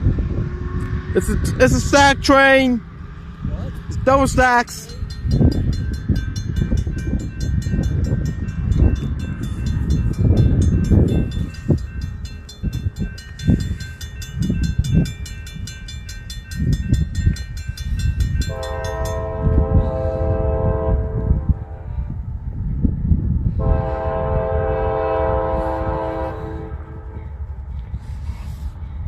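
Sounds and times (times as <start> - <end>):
freight train rumbling past: 0.0 - 29.0
locomotive horn chord: 18.4 - 21.9, 23.6 - 27.2.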